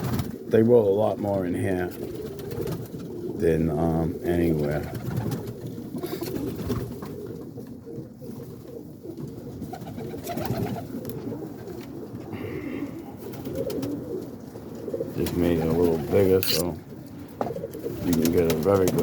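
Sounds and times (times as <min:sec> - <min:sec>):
pigeons cooing: 0:00.0 - 0:19.0.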